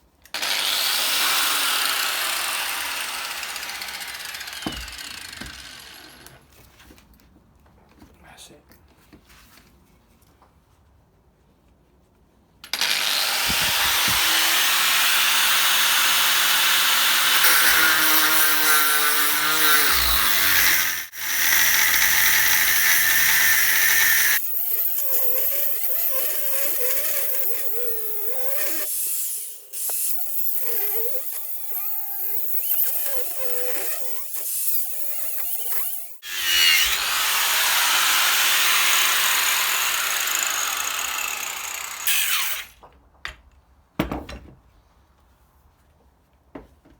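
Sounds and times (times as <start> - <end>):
angle grinder cutting metal: 0.4 - 6.4, 12.7 - 42.8.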